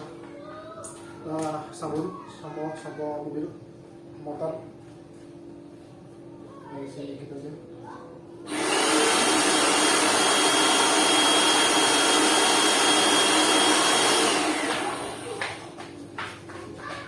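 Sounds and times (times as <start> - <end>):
pressure washer running: 8.5 - 15.8.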